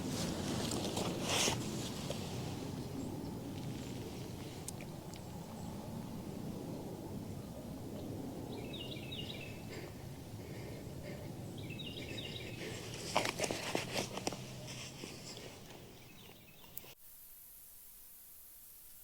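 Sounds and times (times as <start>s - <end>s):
crackling rustles: 0.0s - 5.2s, 12.0s - 17.4s
outdoor background noise: 0.0s - 19.0s
bird chirping: 7.3s - 10.0s, 10.6s - 13.2s, 14.5s - 17.0s.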